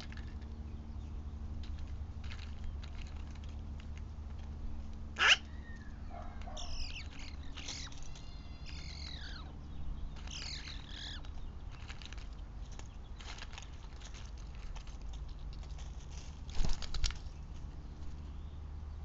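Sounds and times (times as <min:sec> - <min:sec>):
high short falling animal calls: 0:05.2 - 0:05.9
sharp animal cry falling in pitch: 0:05.2 - 0:05.9, 0:06.5 - 0:09.5.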